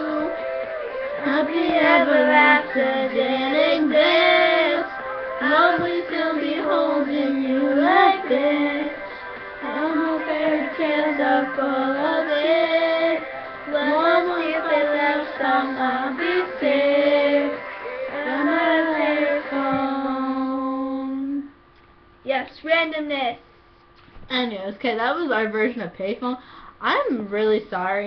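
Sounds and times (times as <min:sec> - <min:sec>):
girls singing pop melody: 0:00.0 - 0:21.5.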